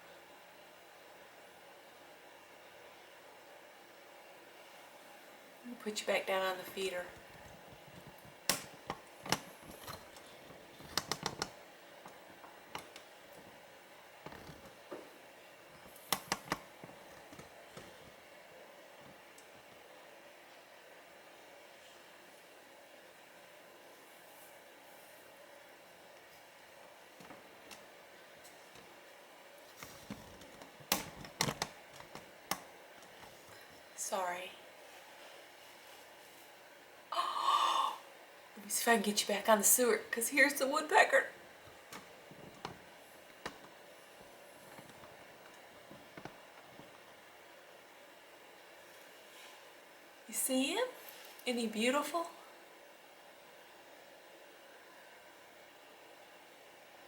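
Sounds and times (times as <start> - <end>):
sharp clicks and knocks: 7.2 - 13.1, 15.8 - 18.1, 29.9 - 33.3, 44.7 - 47.0.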